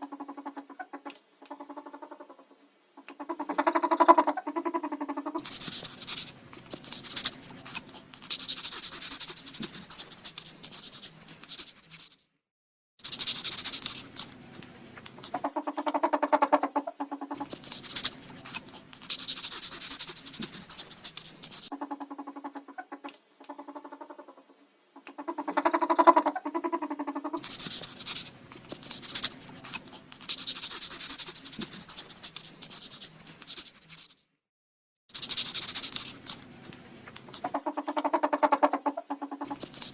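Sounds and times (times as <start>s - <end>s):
ferret calls: 0.0s - 2.4s, 3.0s - 11.7s, 15.1s - 33.8s, 35.1s - 36.4s, 37.2s - 39.9s
ferrets rustling and scratching: 5.4s - 12.2s, 13.0s - 15.4s, 17.3s - 21.7s, 27.4s - 34.1s, 35.1s - 37.6s, 39.4s - 39.9s.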